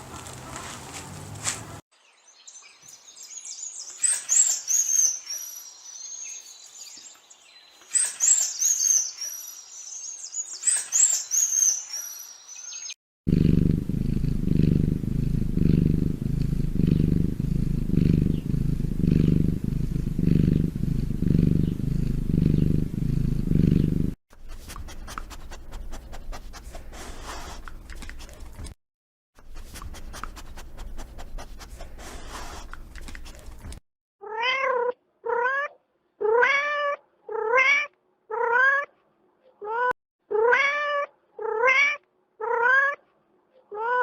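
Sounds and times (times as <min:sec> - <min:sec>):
cat purring: 0:13.3 - 0:24.2.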